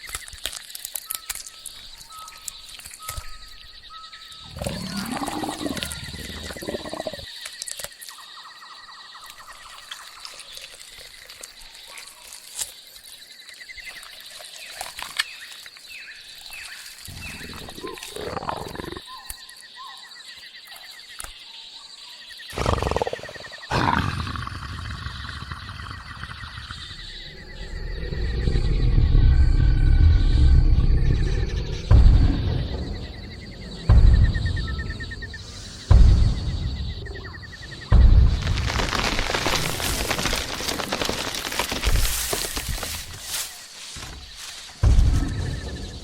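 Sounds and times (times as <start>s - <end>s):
jungle insect drone: 0.0s - 46.0s
large animal roaring and growling: 4.5s - 7.2s, 22.5s - 33.0s.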